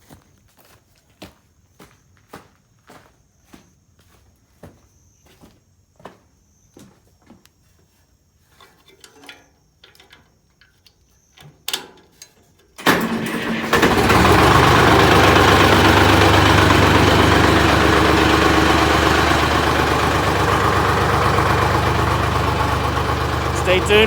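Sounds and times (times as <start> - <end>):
diesel engine starting and running: 12.8 - 24.0.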